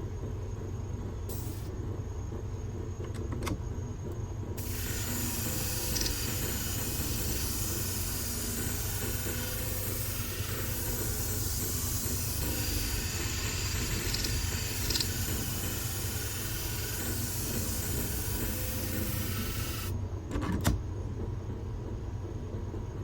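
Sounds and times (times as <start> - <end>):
motor hum: 0.0 - 22.9
blade grinding on sharpening wheel: 4.6 - 19.9.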